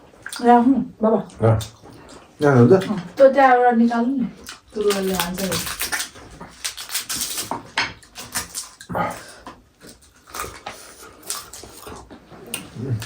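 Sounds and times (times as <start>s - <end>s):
mouths smacking and slurping: 4.4s - 13.0s.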